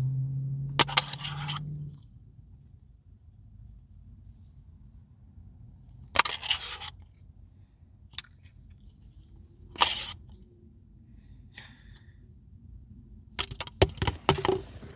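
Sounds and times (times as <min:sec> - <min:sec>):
spoon scraping ice cream cup: 0:00.8 - 0:01.7, 0:06.2 - 0:07.0, 0:09.7 - 0:10.3.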